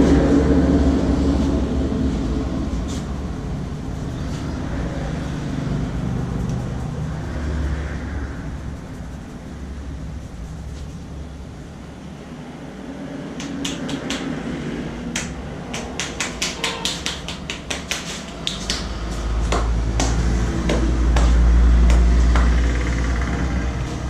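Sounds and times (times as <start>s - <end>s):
loud low rumble: 0.0s - 13.4s
hands clicking and slapping: 13.3s - 22.6s.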